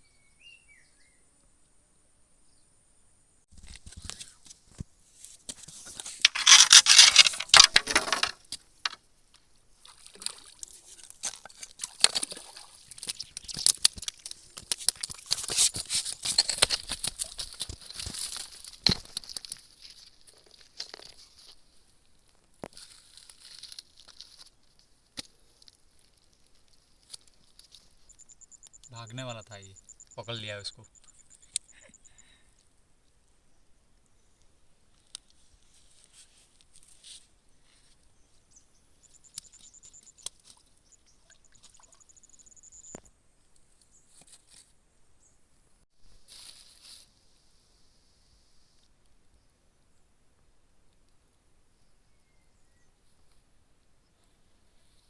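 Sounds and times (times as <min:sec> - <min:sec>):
rustling and crinkling: 0:03.5 - 0:28.2, 0:34.9 - 0:38.5, 0:42.9 - 0:44.8, 0:46.0 - 0:47.4.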